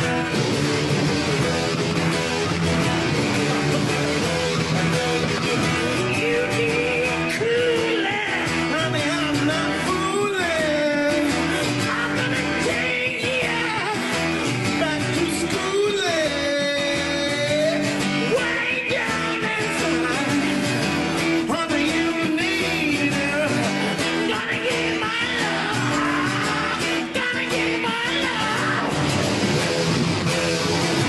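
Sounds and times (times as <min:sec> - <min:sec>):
steady drum beat: 0:00.0 - 0:07.3
guitar: 0:00.0 - 0:31.0
rock song with singing: 0:00.0 - 0:31.0.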